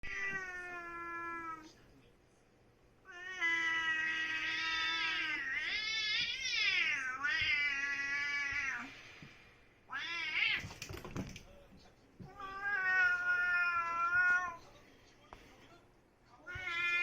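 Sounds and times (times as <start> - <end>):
cat yowling: 3.1 - 8.9, 9.9 - 10.7, 12.3 - 14.6.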